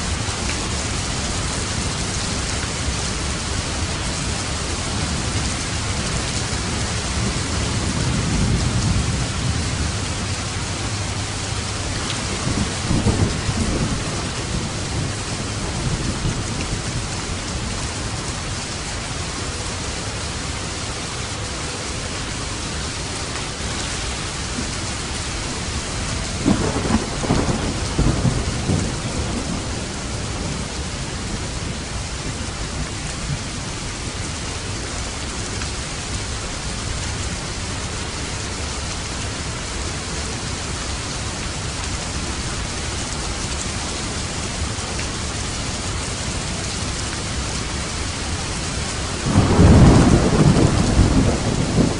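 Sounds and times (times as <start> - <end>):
rain falling on a roof: 0.0 - 51.9
thunderclap rumbling: 12.1 - 17.1, 26.3 - 33.5, 49.1 - 51.9.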